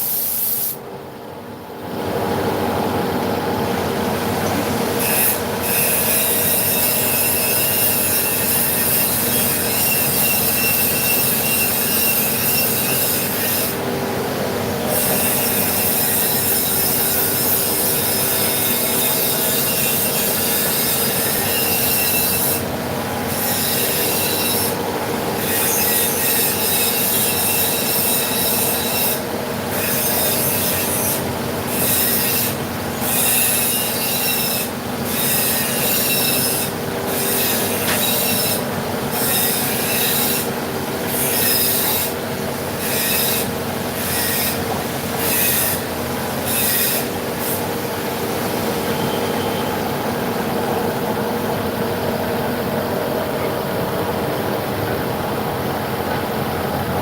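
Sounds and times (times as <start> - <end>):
high-pitched cutter squeal: 5.0 - 13.8, 14.9 - 22.6, 23.3 - 24.8, 25.4 - 38.6, 39.2 - 40.5, 41.1 - 42.2, 42.8 - 44.6, 45.2 - 47.6, 48.6 - 49.9.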